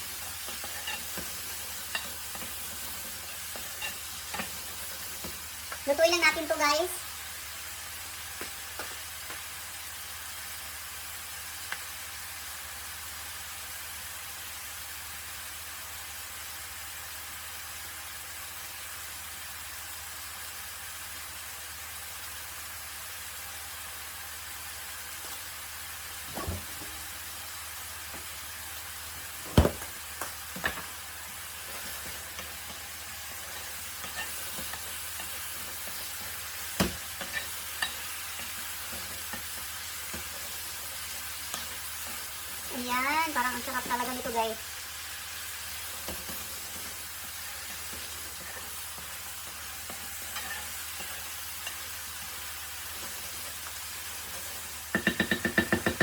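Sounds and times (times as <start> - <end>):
vegetables sizzling in a frying pan: 0.0 - 56.0
utensil knocking against pan: 54.9 - 56.0.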